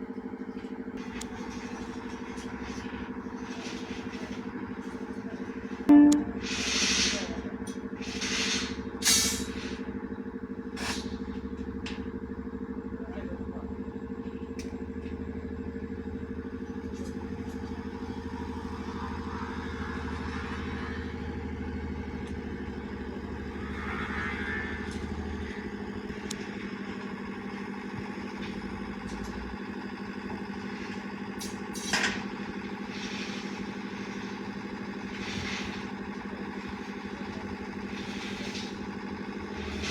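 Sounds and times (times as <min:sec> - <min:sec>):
mechanical engine hum: 0:00.0 - 0:39.9
deep rumble: 0:14.3 - 0:29.0.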